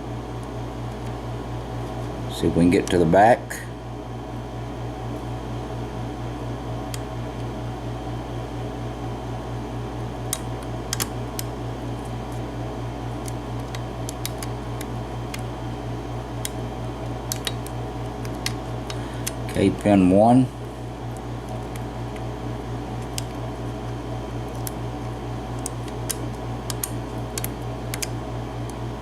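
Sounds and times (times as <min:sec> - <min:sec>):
fan hum: 0:00.0 - 0:29.0
lock pick clicking: 0:25.6 - 0:28.1.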